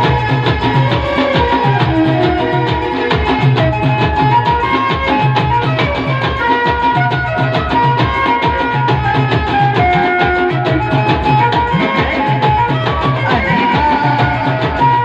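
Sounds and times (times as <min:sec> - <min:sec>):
fast drum beat: 0:00.0 - 0:15.0
live band dance music: 0:00.0 - 0:15.0.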